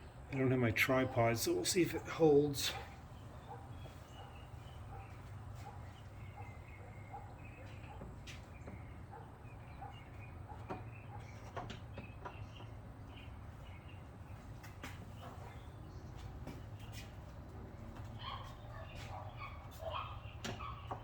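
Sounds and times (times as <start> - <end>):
bird chirps: 2.8 - 17.0.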